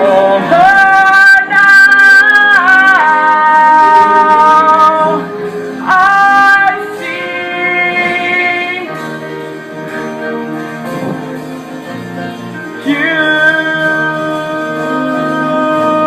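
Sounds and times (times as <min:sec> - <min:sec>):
person singing: 0:00.0 - 0:09.4, 0:12.5 - 0:16.0
plucked guitar: 0:00.0 - 0:16.0
short loud note: 0:10.7 - 0:11.7.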